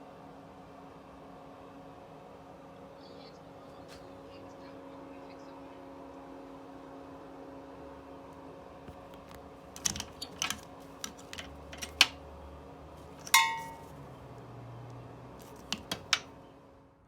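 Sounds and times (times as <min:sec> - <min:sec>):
metal parts clicking and knocking: 0:09.8 - 0:12.1, 0:13.2 - 0:13.9, 0:15.5 - 0:16.2
ringing metallic clink: 0:13.3 - 0:13.9.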